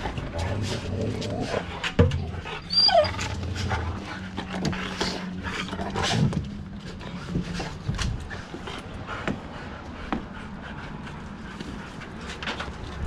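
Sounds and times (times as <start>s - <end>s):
dogs whining and whimpering: 0.0s - 9.0s.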